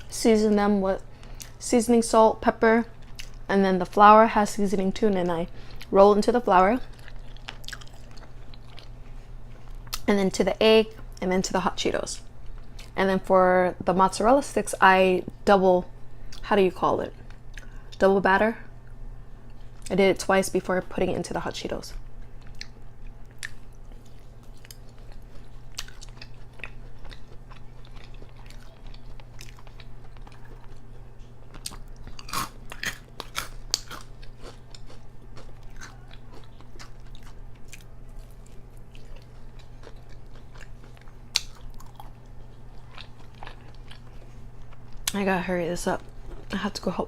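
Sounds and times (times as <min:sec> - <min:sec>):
crunchy chewing and biting: 0:06.8 - 0:10.0, 0:22.4 - 0:45.2.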